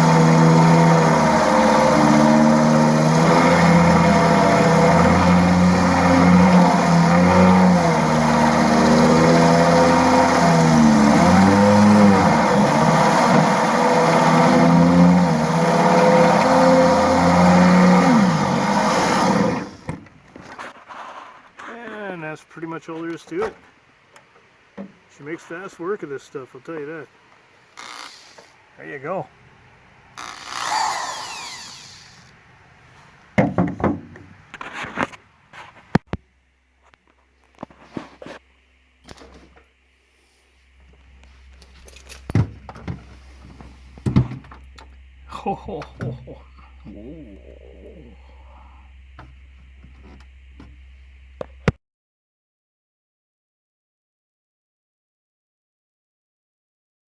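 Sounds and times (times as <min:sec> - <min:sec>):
drill cutting sheet metal: 0:00.0 - 0:19.9, 0:27.8 - 0:28.5, 0:30.2 - 0:32.3.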